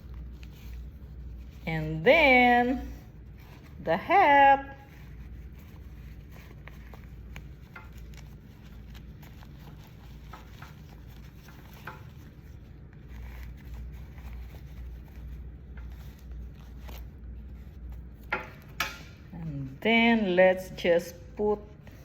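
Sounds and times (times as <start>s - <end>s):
small clicks and rustles of handling: 0.0s - 1.7s, 4.9s - 19.1s
low steady hum: 0.0s - 22.0s.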